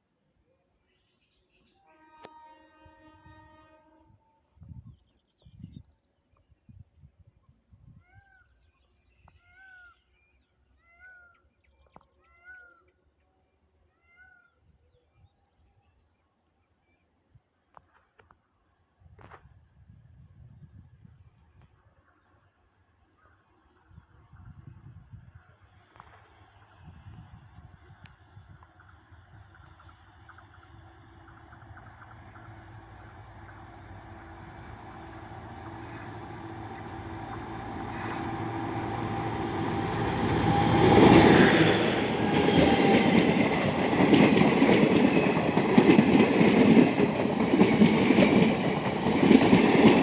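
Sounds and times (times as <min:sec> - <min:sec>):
distant train horn: 0:01.7 - 0:04.4, 0:30.3 - 0:44.7
high insect drone: 0:22.6 - 0:49.8.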